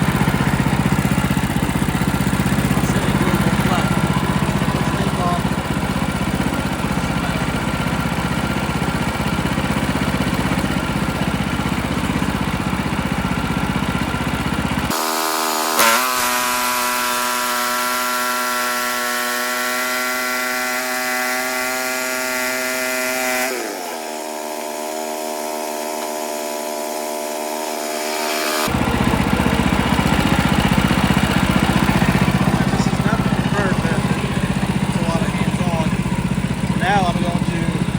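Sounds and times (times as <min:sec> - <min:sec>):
higher engine tone: 0:00.0 - 0:37.9
sawmill cutting log: 0:00.0 - 0:37.9.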